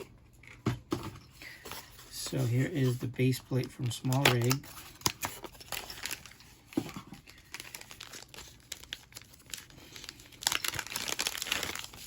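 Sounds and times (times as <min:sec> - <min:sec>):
packaging crinkling: 0:03.5 - 0:12.0.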